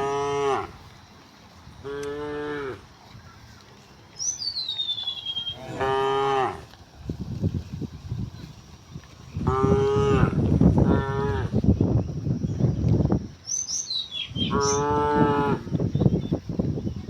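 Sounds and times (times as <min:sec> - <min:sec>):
cows mooing: 0:00.0 - 0:00.8, 0:01.8 - 0:02.9, 0:05.3 - 0:06.7, 0:09.4 - 0:11.6, 0:14.5 - 0:15.7.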